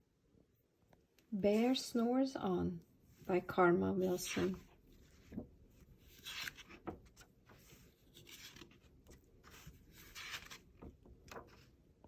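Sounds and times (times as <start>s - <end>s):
book pages rustling and turning: 4.0s - 11.9s.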